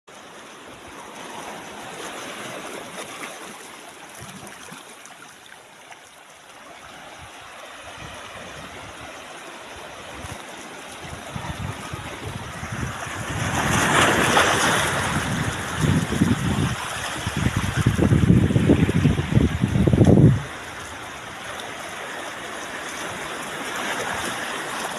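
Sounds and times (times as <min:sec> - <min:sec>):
ocean surf washing in: 0:06.7 - 0:24.9
wave breaking: 0:07.1 - 0:24.9
wind buffeting microphone: 0:09.8 - 0:21.5.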